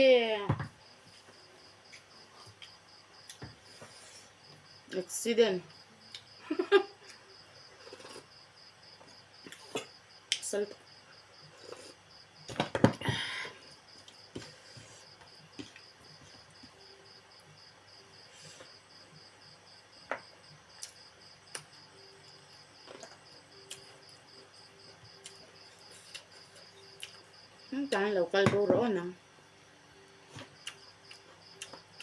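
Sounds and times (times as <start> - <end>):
crickets chirping: 0.0 - 32.0.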